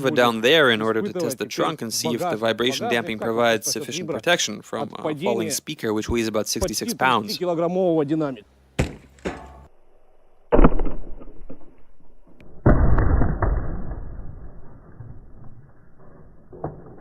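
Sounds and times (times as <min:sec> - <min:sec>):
speaker crashing onto car trunk: 0:08.8 - 0:09.7.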